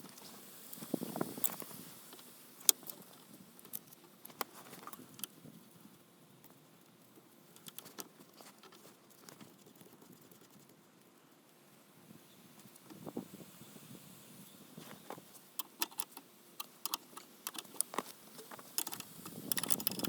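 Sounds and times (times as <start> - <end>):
hand tools clicking on metal: 15.6 - 20.0.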